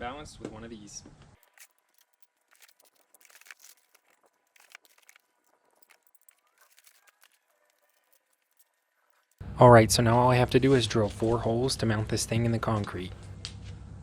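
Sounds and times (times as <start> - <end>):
faint clicks and crackles: 1.2 - 9.4.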